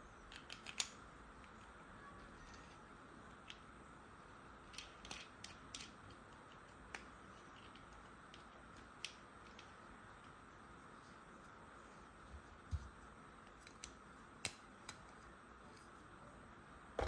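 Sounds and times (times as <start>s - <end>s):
steady low hiss: 0.0s - 17.0s
plastic toy pieces clicking: 0.3s - 1.7s, 4.6s - 9.8s.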